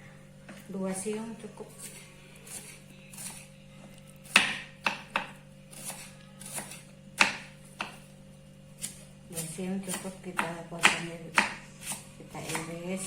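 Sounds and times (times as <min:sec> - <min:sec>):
knife chopping on cutting board: 0:04.2 - 0:08.1, 0:08.8 - 0:12.8.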